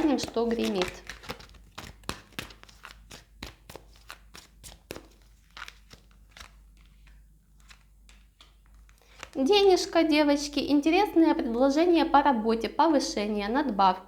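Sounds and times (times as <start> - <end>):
cards being shuffled: 0.0 - 9.5.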